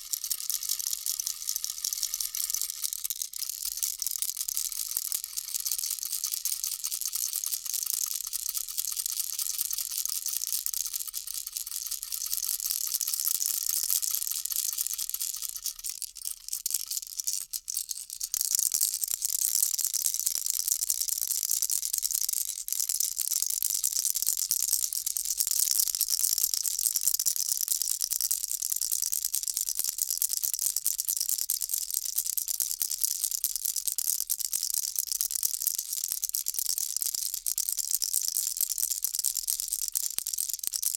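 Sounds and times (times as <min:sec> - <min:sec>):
baby rattle shaking: 0:00.0 - 0:20.6, 0:28.9 - 0:40.9.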